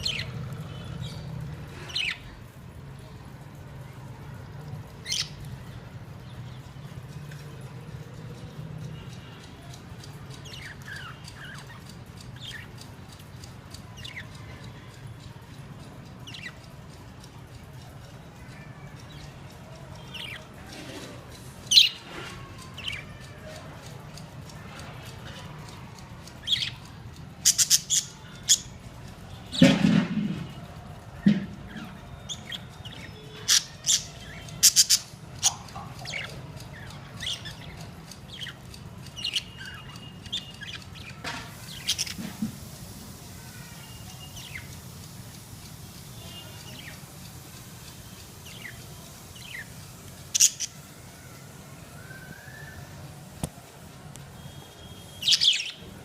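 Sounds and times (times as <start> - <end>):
budgerigars chirping and squawking: 0.0 - 2.4, 5.0 - 5.5, 26.4 - 28.7, 31.2 - 43.0, 48.3 - 50.8, 55.0 - 55.8.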